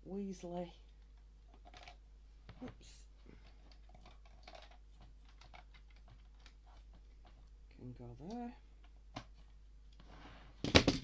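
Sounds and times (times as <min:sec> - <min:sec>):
person speaking: 0:00.0 - 0:00.9, 0:02.5 - 0:03.2, 0:07.8 - 0:08.7
plastic bricks clicking: 0:03.7 - 0:07.4.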